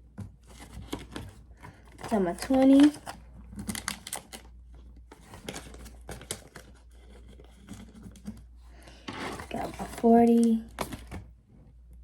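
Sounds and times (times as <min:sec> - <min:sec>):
banknotes rustling: 0:00.5 - 0:04.4, 0:08.8 - 0:10.7.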